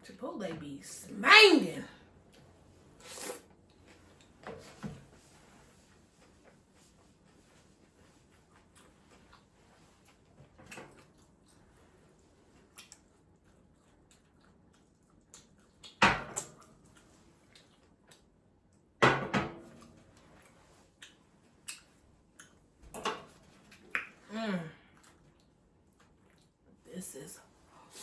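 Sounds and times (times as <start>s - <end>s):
person eating: 3.0s - 3.4s.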